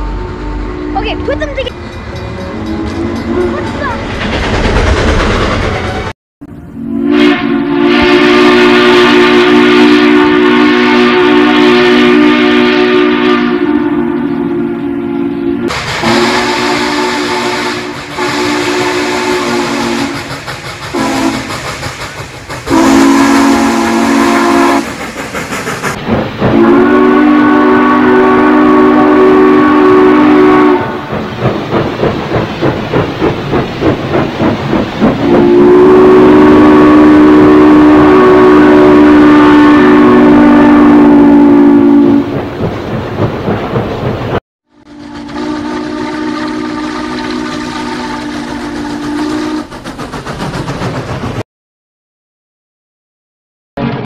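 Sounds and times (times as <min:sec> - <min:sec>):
steam locomotive chime whistle: 0:00.2 - 0:03.9, 0:06.8 - 0:20.3, 0:20.9 - 0:21.5, 0:22.7 - 0:24.9, 0:26.5 - 0:31.0, 0:35.2 - 0:42.3, 0:44.9 - 0:49.7.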